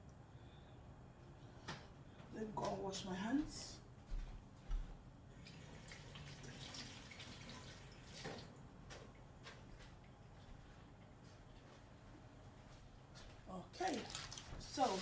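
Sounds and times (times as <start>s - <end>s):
hands washing splashes: 5.4s - 8.6s, 13.8s - 15.0s
tap water running into sink: 5.5s - 8.5s.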